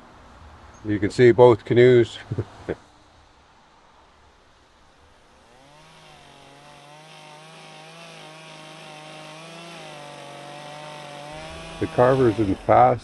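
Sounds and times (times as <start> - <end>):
chainsaw engine running: 5.3 - 13.0.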